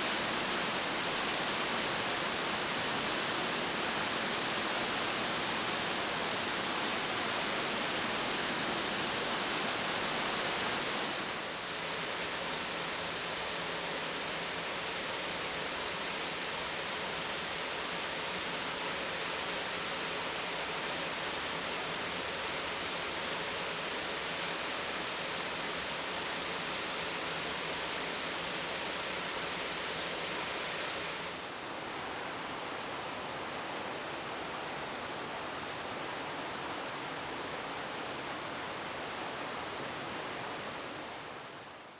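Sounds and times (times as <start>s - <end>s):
waterfall roar: 0.0s - 11.6s.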